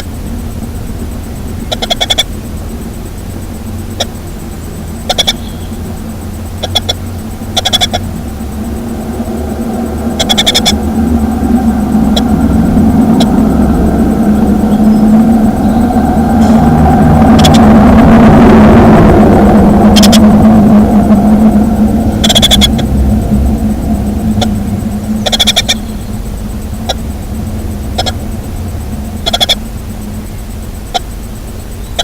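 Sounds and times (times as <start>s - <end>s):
vehicle engine rumble: 0.0s - 32.0s
baby birds chirping: 1.6s - 2.3s, 5.0s - 5.8s, 6.6s - 8.1s, 10.1s - 10.8s, 19.9s - 20.3s, 22.2s - 22.9s, 25.2s - 27.1s, 27.9s - 28.2s, 29.2s - 29.6s
sharp clicks: 1.6s - 2.4s, 5.0s - 5.6s, 6.6s - 8.1s, 10.2s - 10.8s, 17.4s - 17.7s, 19.9s - 20.3s, 28.0s - 28.2s.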